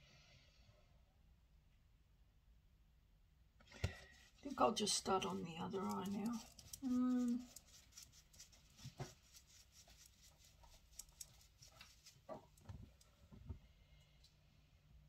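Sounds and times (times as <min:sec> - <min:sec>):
makeup brush tapping and scratching: 0:03.7 - 0:13.1.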